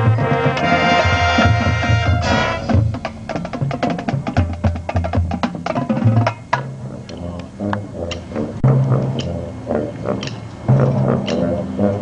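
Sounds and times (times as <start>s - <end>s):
low drum notes: 0.0s - 12.0s
marching band holding a chord: 0.0s - 12.0s
sharp drum hits: 0.6s - 6.7s.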